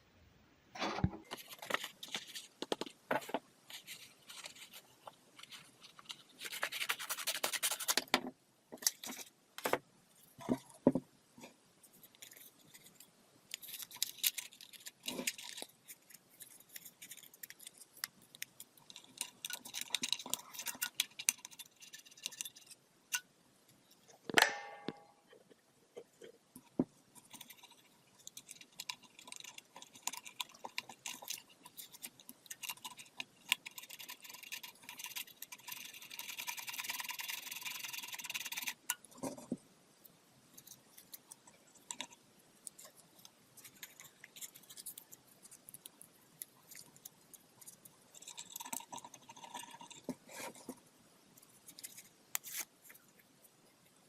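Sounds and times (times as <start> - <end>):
tools clicking and knocking: 24.3 - 25.5.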